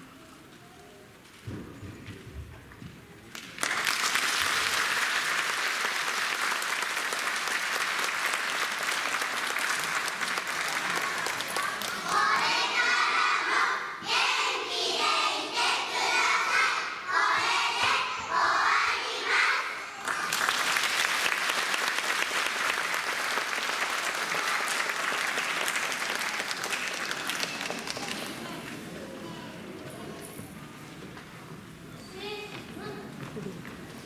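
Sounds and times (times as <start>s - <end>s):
audience applause: 3.4s - 12.4s, 20.0s - 28.6s.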